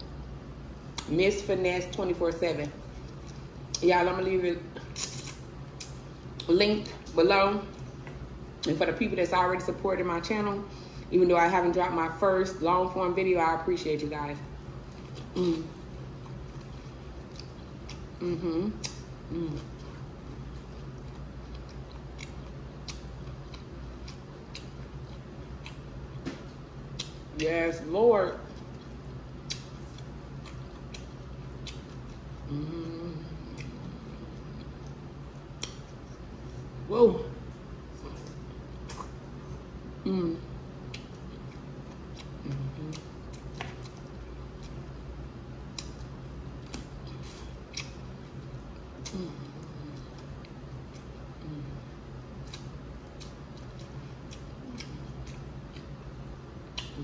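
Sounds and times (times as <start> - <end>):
steady low hum: 0.0 - 57.0
chewing with sharp crackles: 2.6 - 3.8, 14.8 - 18.2, 18.8 - 27.5, 28.3 - 36.8, 40.8 - 57.0.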